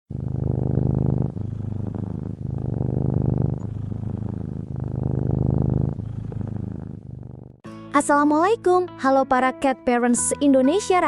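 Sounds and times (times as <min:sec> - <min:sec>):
cat purring: 0:00.1 - 0:07.6.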